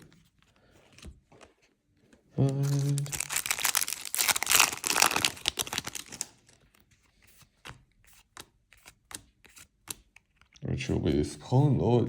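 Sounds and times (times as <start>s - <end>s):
foil pack crinkling: 2.6s - 6.4s.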